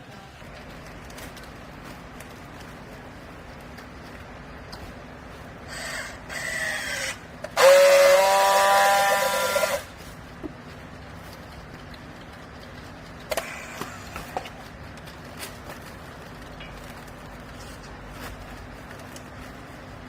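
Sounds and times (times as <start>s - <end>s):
hydraulic whine: 5.7s - 9.9s.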